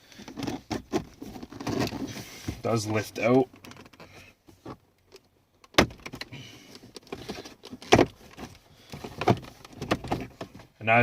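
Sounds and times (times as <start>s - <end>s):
plastic clicking and rattling: 3.5s - 10.6s.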